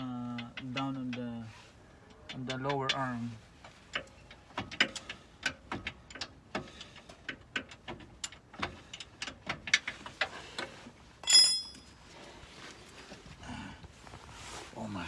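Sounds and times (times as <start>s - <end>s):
ringing metal clank: 11.2s - 12.0s.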